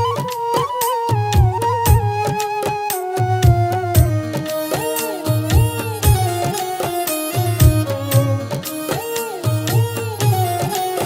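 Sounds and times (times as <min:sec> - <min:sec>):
folk music gliding melody: 0:00.0 - 0:11.0
low drum beat: 0:03.4 - 0:06.5, 0:07.4 - 0:08.6.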